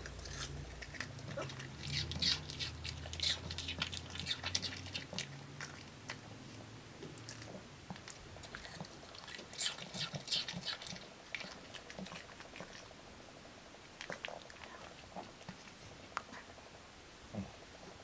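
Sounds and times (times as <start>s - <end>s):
dog crunching apple: 0.0s - 12.9s.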